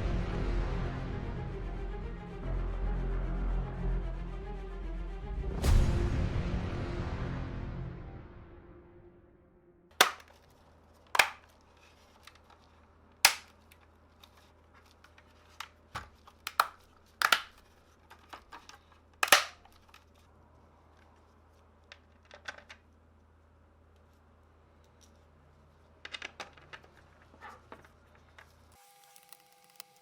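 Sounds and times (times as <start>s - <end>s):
music: 0.0s - 9.9s
hard objects clacking and knocking: 10.0s - 10.5s, 11.1s - 12.7s, 13.3s - 20.2s, 21.9s - 22.9s, 26.0s - 28.5s.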